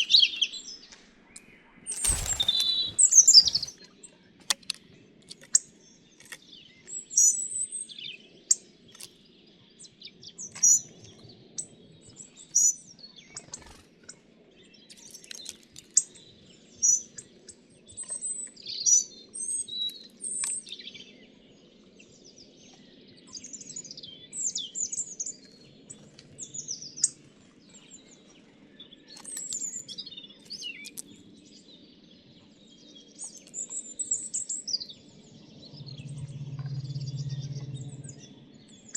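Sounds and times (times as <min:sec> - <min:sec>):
songbirds chirping and trilling: 0:00.0 - 0:03.8, 0:05.0 - 0:38.9.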